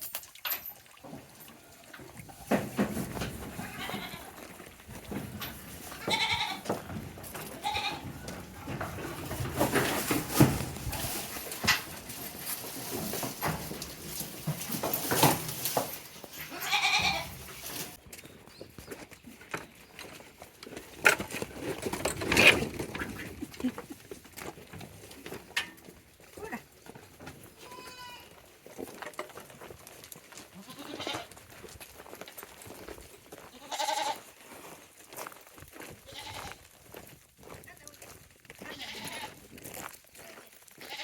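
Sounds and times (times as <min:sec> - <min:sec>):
knocks and rustling: 0:02.0 - 0:18.0, 0:20.8 - 0:25.8
goats bleating: 0:03.5 - 0:04.5, 0:05.8 - 0:06.8, 0:07.4 - 0:08.2, 0:16.4 - 0:17.4, 0:27.6 - 0:28.3, 0:30.6 - 0:31.4, 0:33.5 - 0:34.3, 0:36.1 - 0:36.6, 0:38.6 - 0:39.4, 0:40.8 - 0:41.0.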